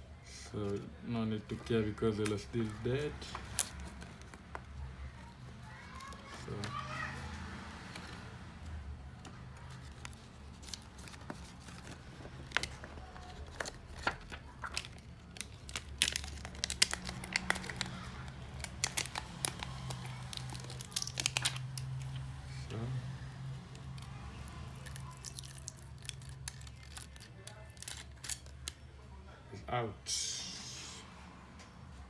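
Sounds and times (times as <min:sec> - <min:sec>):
adhesive tearing: 0:09.6 - 0:22.3, 0:23.6 - 0:28.8.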